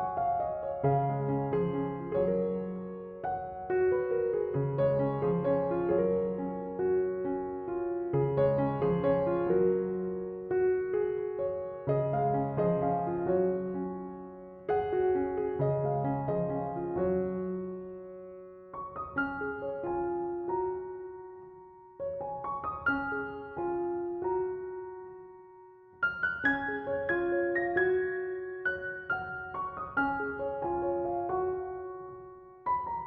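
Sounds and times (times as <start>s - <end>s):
gentle piano music: 0.0s - 33.0s.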